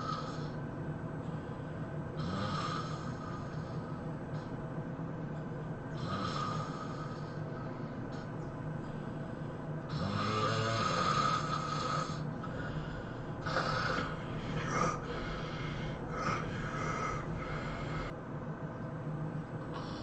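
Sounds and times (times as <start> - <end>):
person snoring: 0.0 - 0.6, 2.2 - 4.5, 5.9 - 7.8, 9.9 - 18.1, 19.7 - 20.0.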